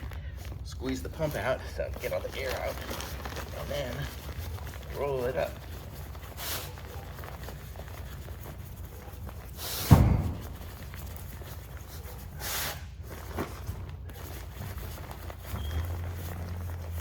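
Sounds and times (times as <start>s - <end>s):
sleeping pad fabric rustling: 0.0s - 17.0s
heavy thump: 9.8s - 11.0s.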